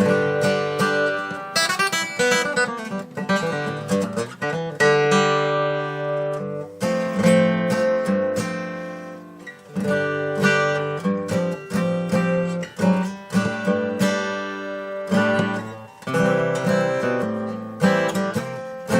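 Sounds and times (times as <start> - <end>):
acoustic guitar picking and strumming: 0.0 - 18.9.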